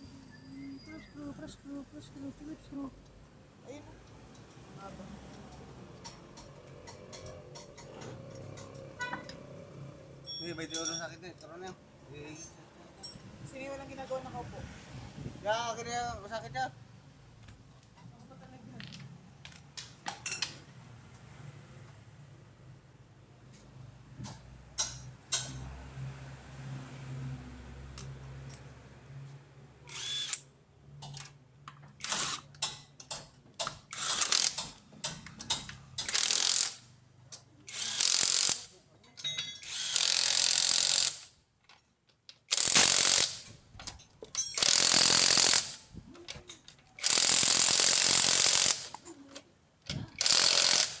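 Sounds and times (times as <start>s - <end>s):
ratchet wrench clicking: 29.9s - 30.5s, 32.0s - 38.8s, 39.5s - 41.3s, 42.5s - 43.5s, 44.4s - 45.8s, 47.0s - 49.0s, 50.2s - 51.0s.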